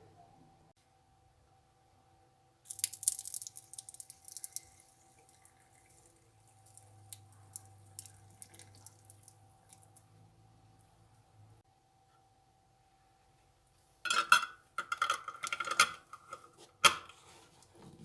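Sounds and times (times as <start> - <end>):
water drips: 2.7 - 10.2.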